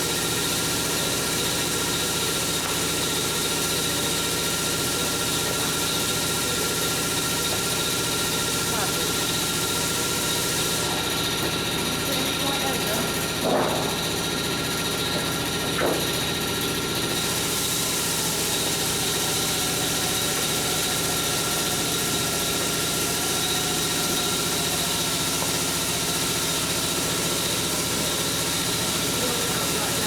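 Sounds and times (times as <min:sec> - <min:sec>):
machine humming with whine: 0:14.2 - 0:30.0.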